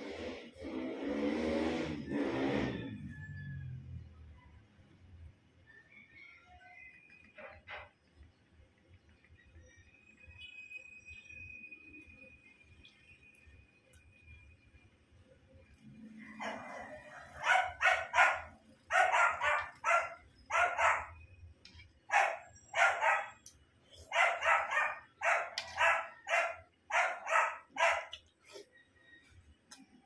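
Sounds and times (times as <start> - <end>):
dog barking: 16.3 - 21.2, 22.1 - 23.4, 24.0 - 28.2.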